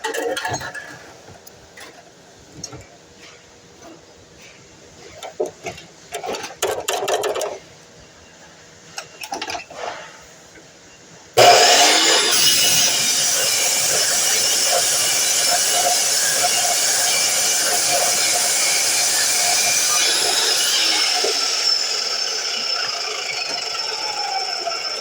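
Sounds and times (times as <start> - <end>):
miter saw motor running: 11.4 - 25.0.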